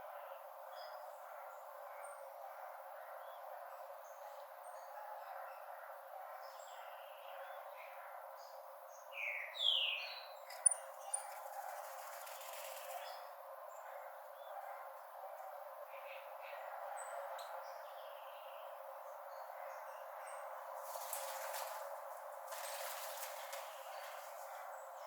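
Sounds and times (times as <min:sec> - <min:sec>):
steady outdoor hiss: 0:00.0 - 0:25.0
sparrow singing whistled notes: 0:09.2 - 0:11.4.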